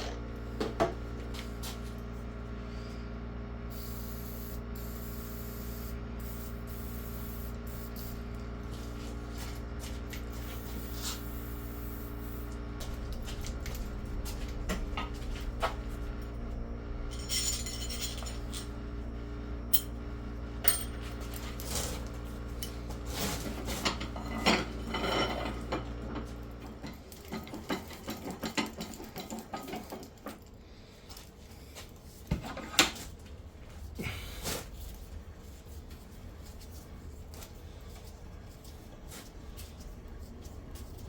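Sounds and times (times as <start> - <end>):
low steady hum: 0.0 - 27.8
metal tools clinking and scraping: 12.8 - 18.8, 20.6 - 26.3.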